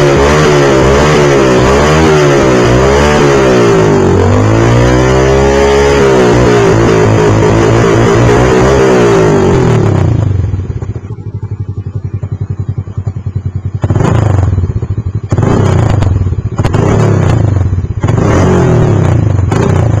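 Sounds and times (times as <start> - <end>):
motorcycle engine revving: 0.0 - 20.0
motorcycle engine idling: 9.2 - 20.0.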